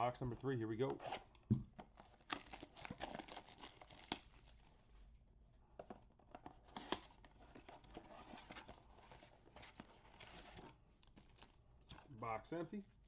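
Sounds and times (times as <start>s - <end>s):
card packs crinkling and tearing: 1.9s - 4.7s, 6.5s - 11.6s.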